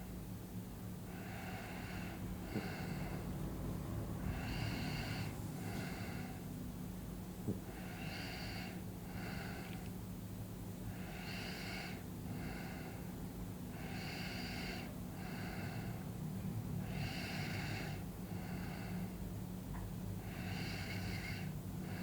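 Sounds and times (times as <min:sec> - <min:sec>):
person breathing in sleep: 0:01.1 - 0:03.3, 0:04.2 - 0:06.4, 0:07.6 - 0:09.9, 0:10.9 - 0:16.1, 0:16.8 - 0:19.2, 0:20.2 - 0:22.0.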